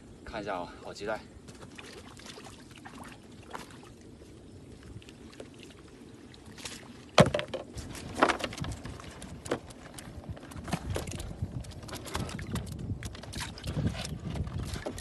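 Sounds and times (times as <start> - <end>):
sharp knocks and splashes: 1.4 - 4.0, 6.4 - 15.0
water sloshing: 1.4 - 15.0.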